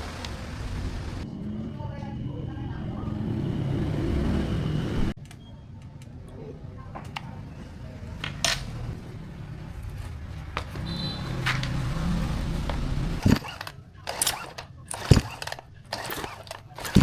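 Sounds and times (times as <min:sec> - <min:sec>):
sharp knocks and clicks: 0:13.2 - 0:17.0.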